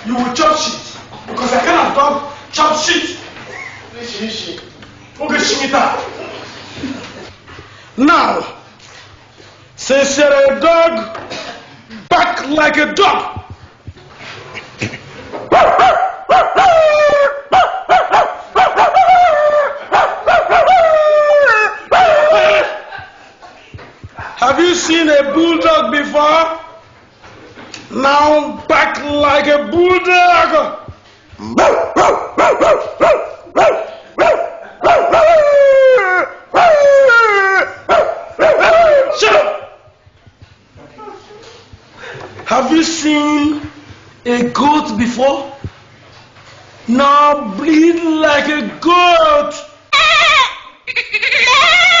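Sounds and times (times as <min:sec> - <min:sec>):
person imitating dog barking: 0:16.4 - 0:17.4, 0:18.8 - 0:23.0, 0:31.4 - 0:32.1, 0:34.2 - 0:39.7, 0:49.9 - 0:52.0.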